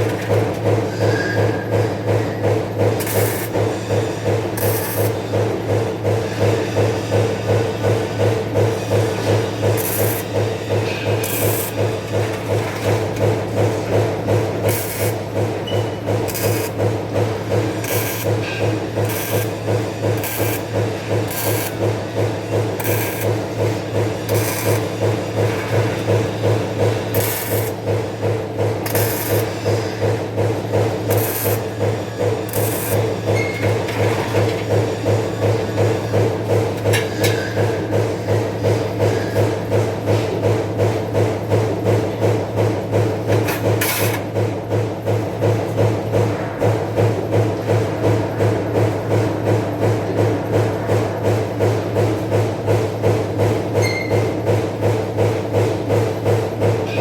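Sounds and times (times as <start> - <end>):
machinery humming rhythmically: 0.0 - 57.0.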